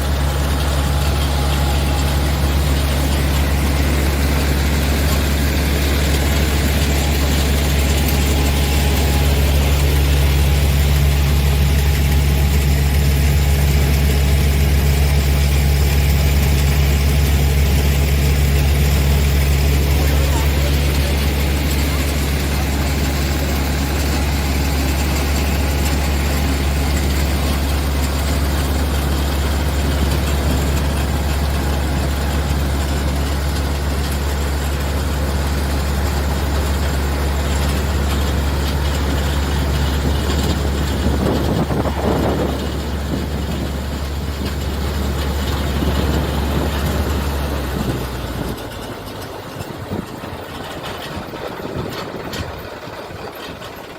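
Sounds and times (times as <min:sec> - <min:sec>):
tractor diesel engine humming: 0:00.0 - 0:53.9.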